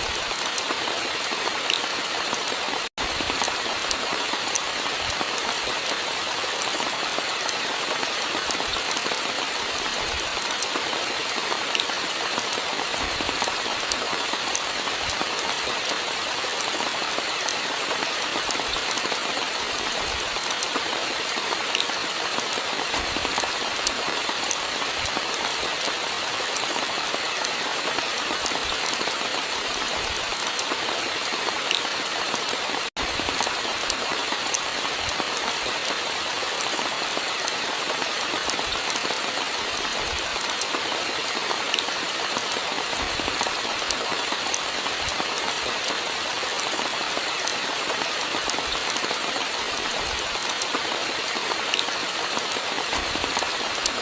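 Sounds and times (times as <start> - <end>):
steady rainfall: 0.0 - 54.0.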